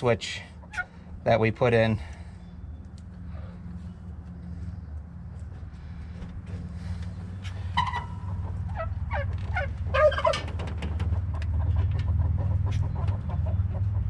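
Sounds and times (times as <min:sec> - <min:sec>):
steady low hum: 0:00.0 - 0:09.9
turkey gobbling: 0:00.5 - 0:01.1, 0:07.4 - 0:10.6.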